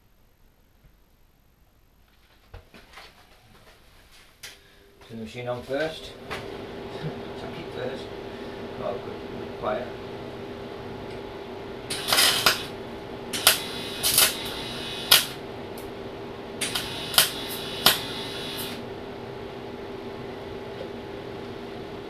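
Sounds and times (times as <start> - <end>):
welding machine hum: 6.0 - 19.2
arc welding bursts: 11.9 - 15.4, 16.6 - 18.8.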